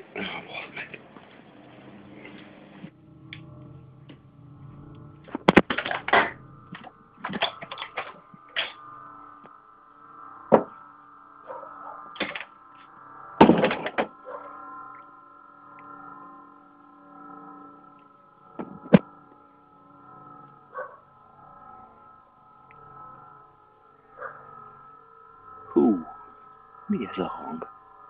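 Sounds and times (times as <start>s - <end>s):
droning hum in the sky: 0.0s - 28.0s
loud bursts of noise: 2.8s - 14.3s.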